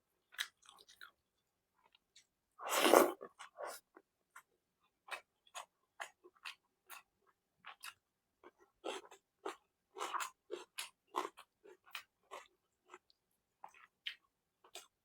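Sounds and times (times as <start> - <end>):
chewing and lip-smacking: 0.3 - 1.2, 5.1 - 7.0, 7.6 - 14.9.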